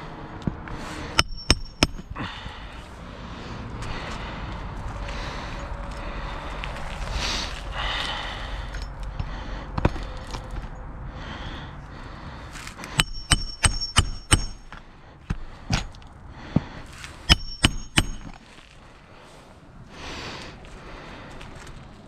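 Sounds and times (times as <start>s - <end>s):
hammer striking metal: 1.1s - 2.2s, 13.0s - 16.0s, 17.3s - 18.4s.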